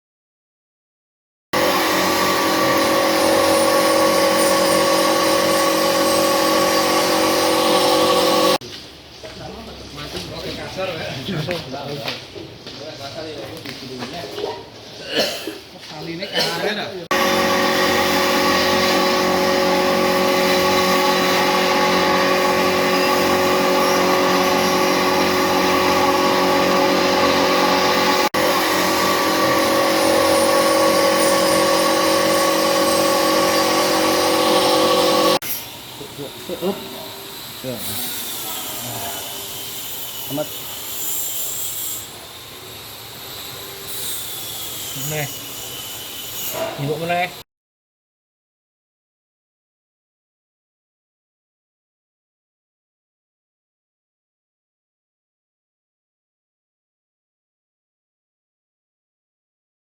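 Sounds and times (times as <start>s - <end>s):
milling machine running: 1.6s - 8.6s, 17.1s - 35.5s.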